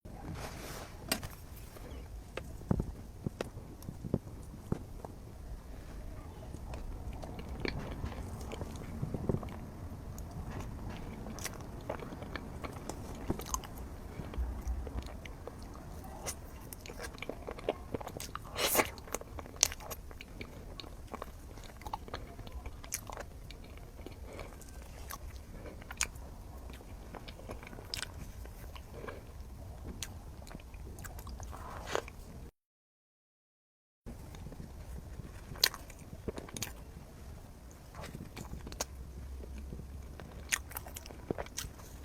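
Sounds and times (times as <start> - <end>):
person biting and chewing: 6.8 - 32.2, 35.5 - 36.8, 39.6 - 42.0.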